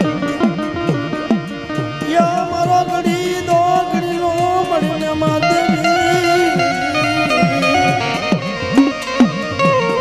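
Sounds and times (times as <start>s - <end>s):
drum beating pitch-bending strokes: 0.0s - 10.0s
stringed instrument melody: 0.0s - 10.0s.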